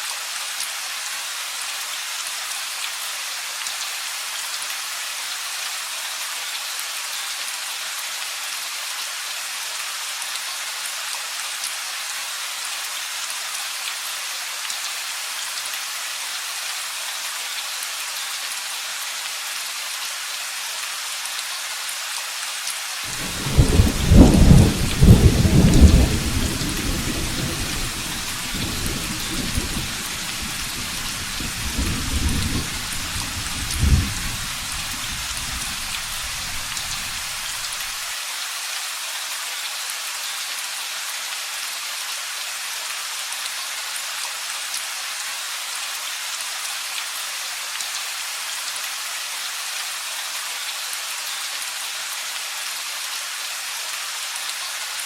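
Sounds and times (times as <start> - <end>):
steady rain falling: 0.0 - 55.0
thunder rumbling: 23.1 - 37.6.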